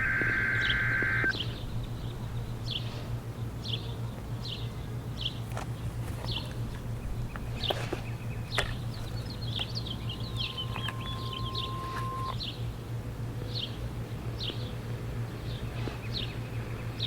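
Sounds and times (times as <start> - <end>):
sharp clicks: 0.0 - 1.3, 9.6 - 12.4
faint steady tone: 0.0 - 1.4, 8.9 - 12.4
birds chirping: 0.0 - 17.0
steady low hum: 0.0 - 17.0.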